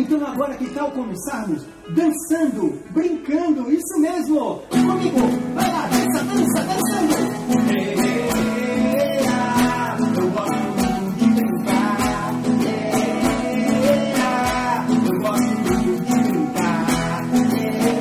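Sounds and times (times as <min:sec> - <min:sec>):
strummed acoustic guitar: 0:04.7 - 0:18.0.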